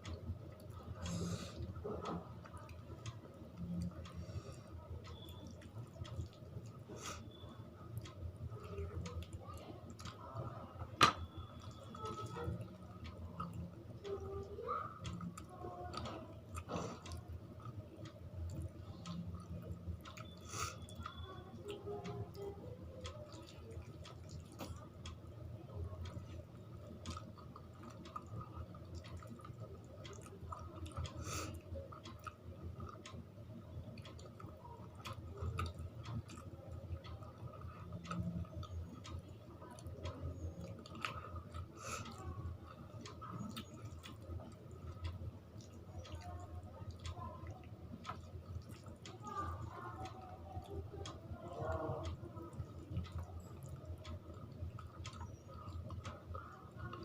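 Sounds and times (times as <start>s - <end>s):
person chewing food: 0.0s - 7.4s, 23.0s - 25.2s, 26.0s - 33.3s, 33.9s - 50.2s, 51.0s - 57.0s.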